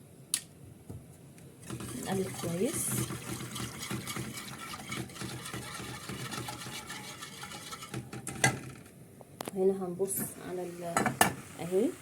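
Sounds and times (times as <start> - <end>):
utensil scraping a pot: 1.6 - 8.5.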